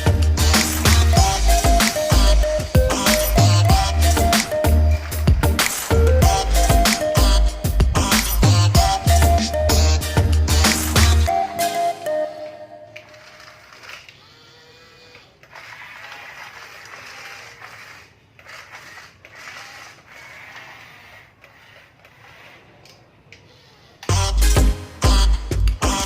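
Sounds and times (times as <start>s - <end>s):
toy electric motors whirring: 13.0s - 24.2s.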